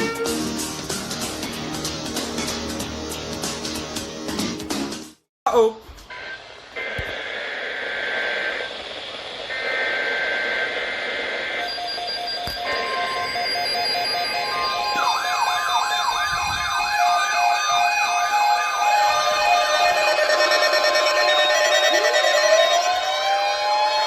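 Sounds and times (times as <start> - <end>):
fast warbling electronic siren: 9.5 - 24.0
electronic alarm tones: 11.4 - 24.0.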